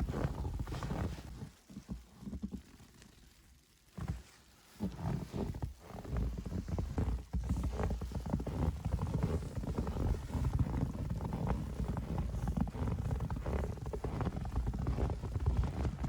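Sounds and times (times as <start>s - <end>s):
footsteps crunching through snow: 0.0s - 1.9s, 4.8s - 16.0s.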